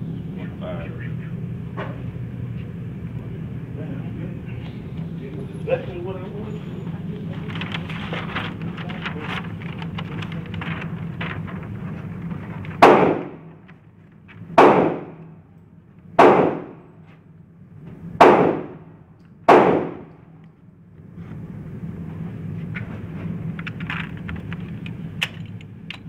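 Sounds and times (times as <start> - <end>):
gunshots with ringing reverberation: 12.8 - 13.5, 14.6 - 15.4, 16.2 - 17.0, 18.2 - 20.2.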